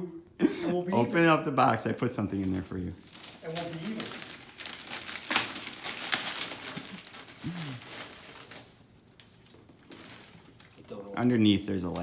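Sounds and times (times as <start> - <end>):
packaging rustling and crinkling: 2.3 - 12.0
person humming: 7.4 - 7.8.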